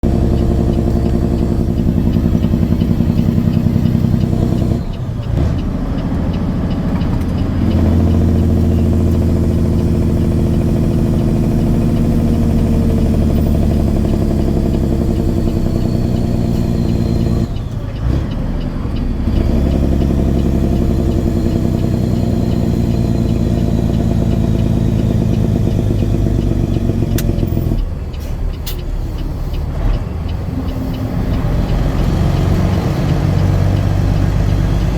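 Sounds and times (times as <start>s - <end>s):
truck diesel engine accelerating: 0.0s - 34.9s
turbo whistling: 13.1s - 17.7s, 19.6s - 27.8s.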